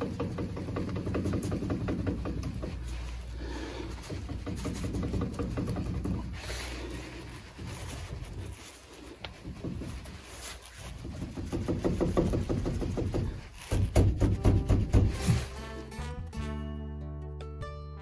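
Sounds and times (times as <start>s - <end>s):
rapid brake knocking: 0.0s - 7.2s, 10.8s - 15.2s.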